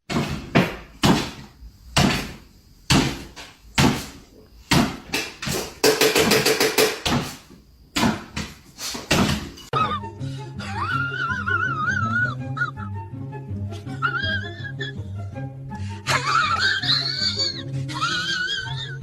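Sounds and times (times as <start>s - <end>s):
sharp knocks: 0.1s - 9.6s.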